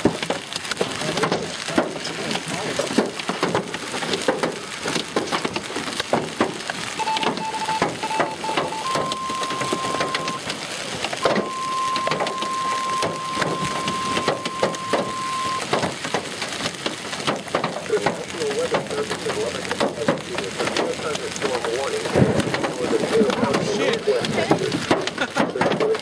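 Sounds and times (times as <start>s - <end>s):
hailstones falling hard: 0.0s - 26.0s
rain: 0.0s - 26.0s
electronic alert tone: 7.0s - 10.4s, 11.2s - 15.6s
short beeps: 7.0s - 10.4s, 11.2s - 15.6s.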